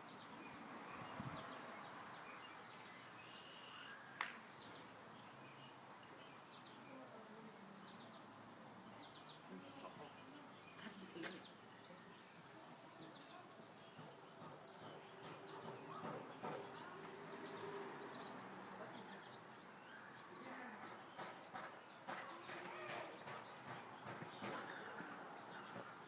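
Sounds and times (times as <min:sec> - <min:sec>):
low background noise: 0:00.0 - 0:26.0
faint bird chirps: 0:02.4 - 0:04.2.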